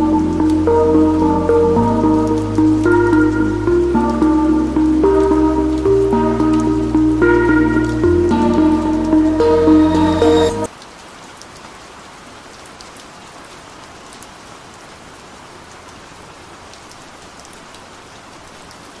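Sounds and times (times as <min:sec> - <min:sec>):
music track: 0:00.0 - 0:10.7
heavy rain: 0:00.0 - 0:19.0.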